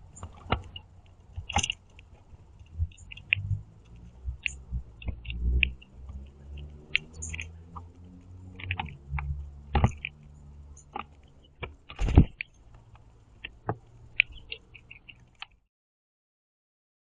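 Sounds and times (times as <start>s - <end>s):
low hum: 0.0s - 15.4s
beaks tapping on feeder: 2.8s - 15.6s
quiet squeaky bird calls: 4.4s - 7.8s, 14.1s - 15.4s.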